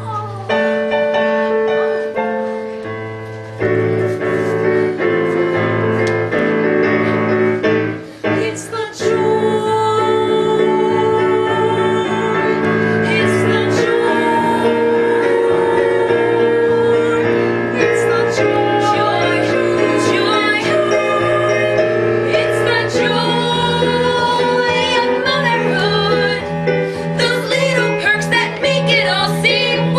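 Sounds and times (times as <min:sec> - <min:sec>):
show tune piano accompaniment: 0:00.0 - 0:29.9
women singing: 0:08.3 - 0:29.9.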